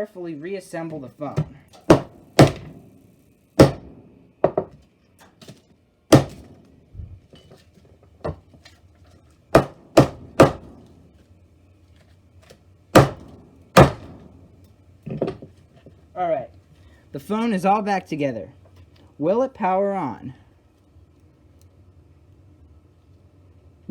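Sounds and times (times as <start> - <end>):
hammer knocks and bangs: 1.4 - 2.9, 3.6 - 4.8, 6.1 - 6.6, 9.6 - 10.9, 13.0 - 14.4.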